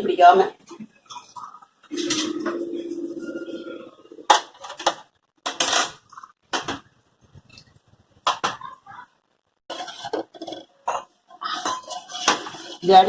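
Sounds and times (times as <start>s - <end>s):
spoon scraping pan: 9.7s - 13.0s.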